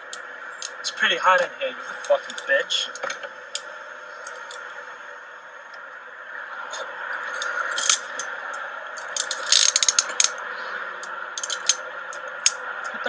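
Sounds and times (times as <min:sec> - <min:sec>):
car cabin hum: 0:00.0 - 0:04.8
handcuff ratcheting clicks: 0:07.3 - 0:08.3, 0:09.0 - 0:10.4, 0:11.4 - 0:12.6
handcuffs clicking: 0:07.3 - 0:08.3, 0:09.0 - 0:10.4, 0:11.4 - 0:11.8.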